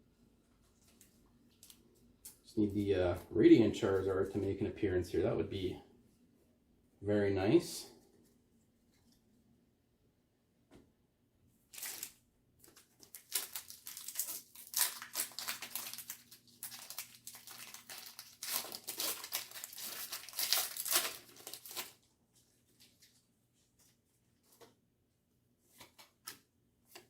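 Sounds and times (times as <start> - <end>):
foil wrapper crinkling and tearing: 11.7 - 22.1.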